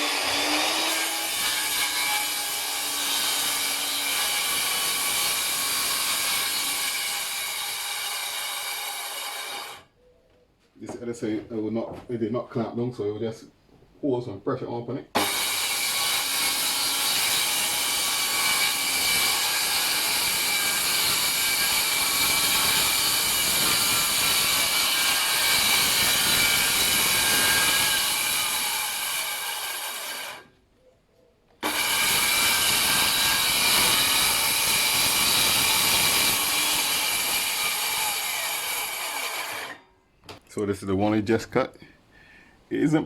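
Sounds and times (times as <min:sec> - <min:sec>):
electric saw cutting plywood: 0:00.0 - 0:09.8, 0:15.2 - 0:30.5, 0:31.6 - 0:39.8.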